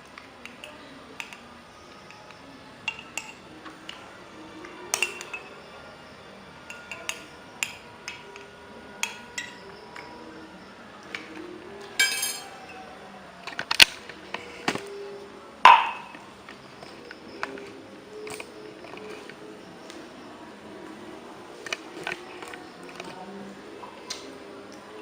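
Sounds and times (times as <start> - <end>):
cutlery and glassware clinking: 4.9 - 5.5, 12.0 - 12.8.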